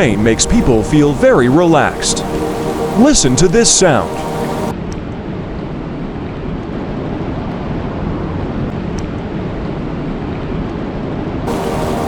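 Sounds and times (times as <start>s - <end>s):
rain falling steadily: 0.0s - 4.7s, 11.5s - 12.0s.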